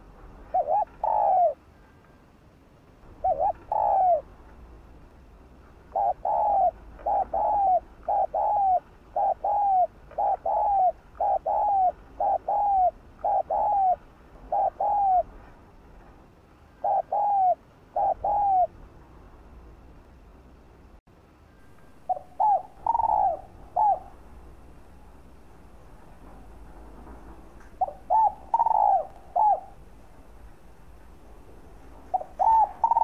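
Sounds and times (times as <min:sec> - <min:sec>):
dove cooing: 0:00.0 - 0:01.6, 0:03.2 - 0:04.3, 0:05.9 - 0:15.4, 0:16.7 - 0:18.8, 0:22.1 - 0:30.4, 0:31.9 - 0:33.0.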